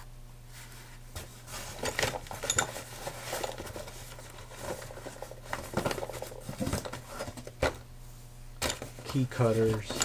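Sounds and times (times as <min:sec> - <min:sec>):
boxes and packaging rustling: 0:01.2 - 0:07.8.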